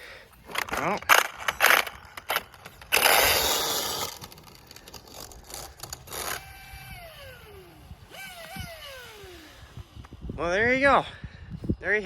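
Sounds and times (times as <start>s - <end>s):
gear grinding and rattling: 0.4s - 10.2s
electric motor whine: 3.0s - 10.3s.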